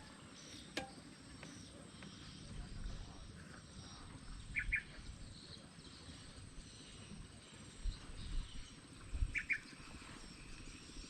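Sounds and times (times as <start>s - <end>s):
insects: 0.0s - 11.0s.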